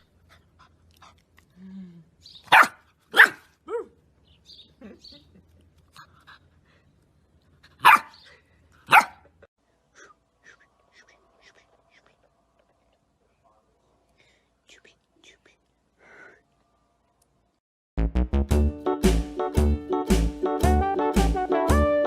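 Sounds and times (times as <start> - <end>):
dog barking: 2.5 - 3.9, 7.8 - 8.2, 8.9 - 9.3.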